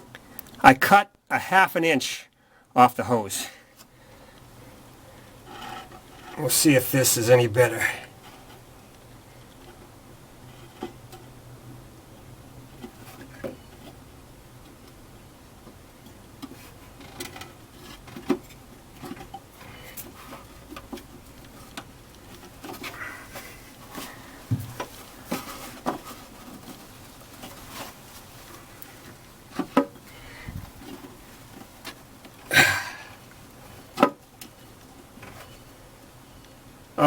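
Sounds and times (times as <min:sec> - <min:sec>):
rubbing and scraping: 0:16.5 - 0:32.1.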